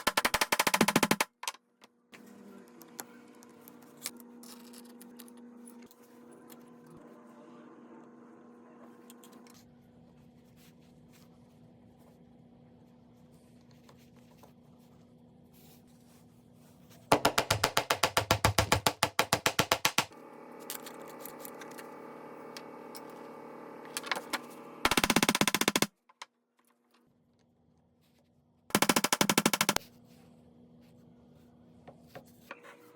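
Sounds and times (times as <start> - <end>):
rapid mechanical impacts: 17.1 - 20.2, 24.8 - 25.9, 28.7 - 29.8.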